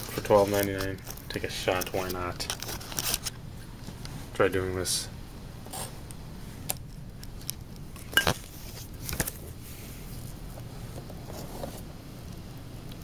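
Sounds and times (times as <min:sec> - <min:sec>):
cardboard and wrapping rustling: 0:00.0 - 0:04.0.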